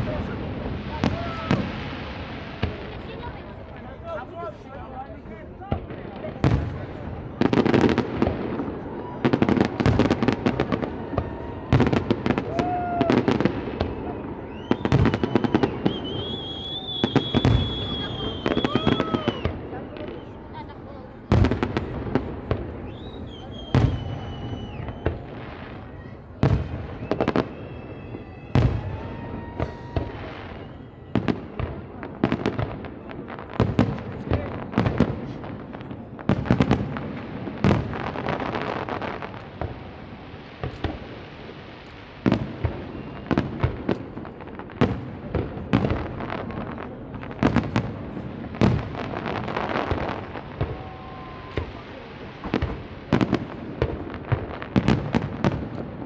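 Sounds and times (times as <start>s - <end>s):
fireworks bangs: 0.0s - 56.0s
firework whistles: 8.8s - 20.6s, 22.7s - 31.7s, 41.8s - 44.2s, 49.4s - 53.4s.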